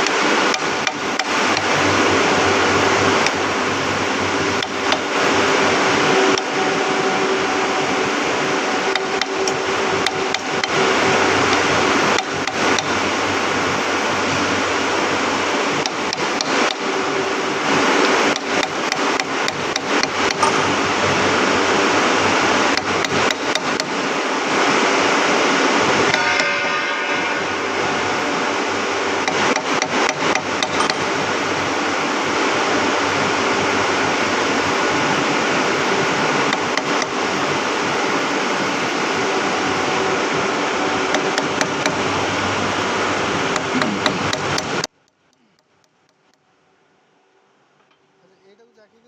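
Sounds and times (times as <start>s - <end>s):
steady machine hum: 0.0s - 49.0s
hammer striking metal: 18.3s - 20.7s, 26.1s - 27.3s, 29.2s - 31.1s.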